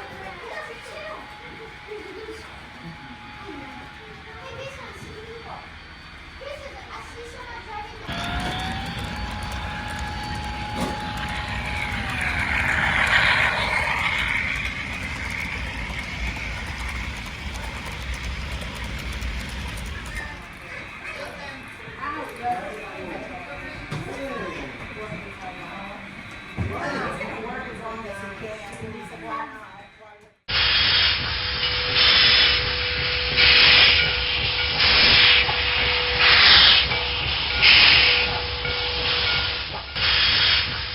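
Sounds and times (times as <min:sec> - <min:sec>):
steady steam hiss: 0:00.0 - 0:27.6, 0:30.5 - 0:40.9
faint hum: 0:00.0 - 0:30.1
low train rumble: 0:00.0 - 0:40.9
steam locomotive chuffing: 0:00.0 - 0:40.9
train rushing on rails: 0:00.0 - 0:40.9
train horn tone: 0:08.1 - 0:20.4, 0:30.5 - 0:39.8.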